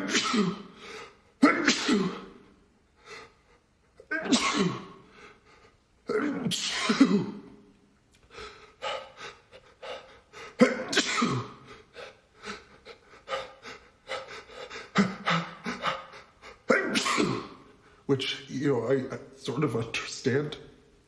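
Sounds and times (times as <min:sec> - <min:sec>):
man sneezing: 0:00.0 - 0:02.5, 0:04.0 - 0:05.1, 0:06.1 - 0:07.6, 0:10.5 - 0:12.1, 0:13.4 - 0:17.8
gasping breaths: 0:11.6 - 0:16.7.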